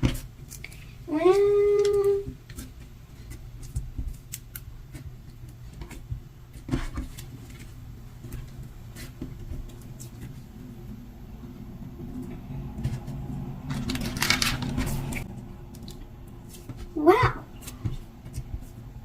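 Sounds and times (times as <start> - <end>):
slime clicking and crackling: 0.0 - 7.3
low steady hum: 0.0 - 19.0.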